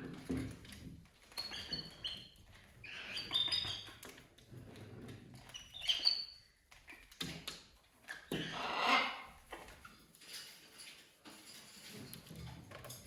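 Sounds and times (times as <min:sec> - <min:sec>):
parrot chirping and squawking: 0:08.3 - 0:09.4.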